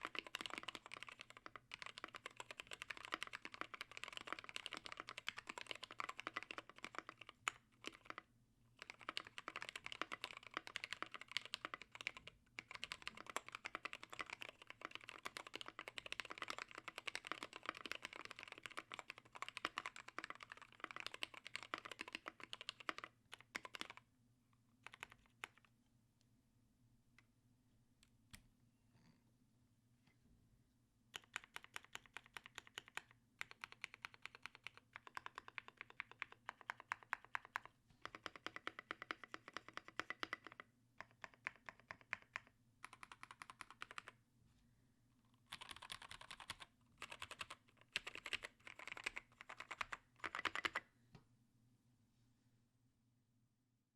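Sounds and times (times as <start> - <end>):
typing on mechanical keyboard: 0.0 - 24.0, 24.8 - 25.7, 31.2 - 44.2, 45.5 - 50.9.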